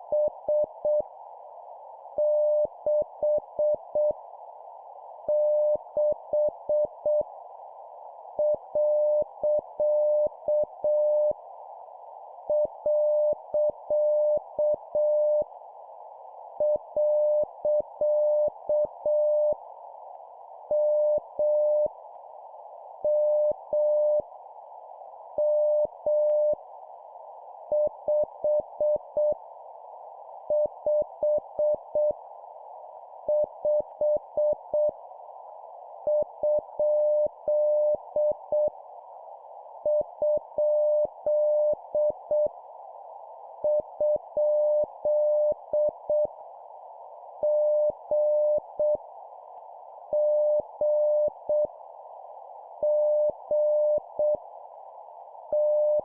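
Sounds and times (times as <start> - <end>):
receiver hiss: 0.0 - 56.0
morse code beeps: 55.6 - 56.0.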